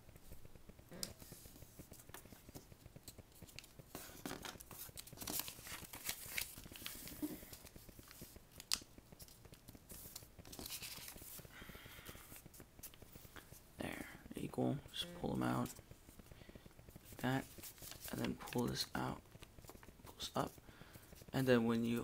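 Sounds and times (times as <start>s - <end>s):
paper rustling and crinkling: 1.2s - 11.5s, 17.0s - 21.4s
sharp paper crackle: 1.2s - 13.0s, 17.0s - 21.4s.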